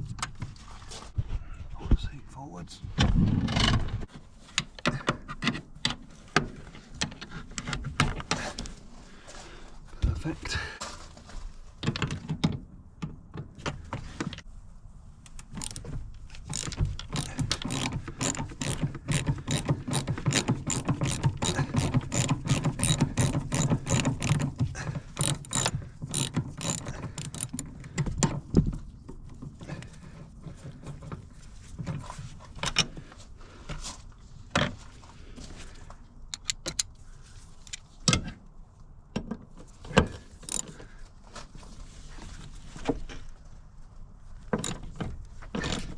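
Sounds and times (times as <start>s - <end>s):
hand ratchet clicking: 15.3s - 15.8s, 16.4s - 27.7s, 36.3s - 36.9s, 40.4s - 40.8s.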